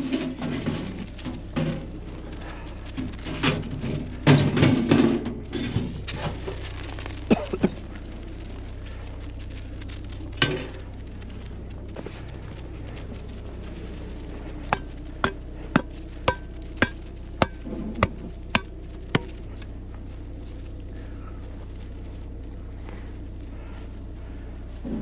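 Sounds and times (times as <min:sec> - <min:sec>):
metal knocking on metal: 0:14.7 - 0:19.3.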